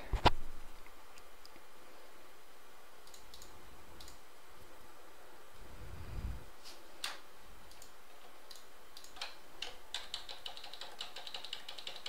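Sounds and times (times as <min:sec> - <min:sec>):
computer keyboard typing: 0:03.0 - 0:04.2, 0:07.0 - 0:12.0.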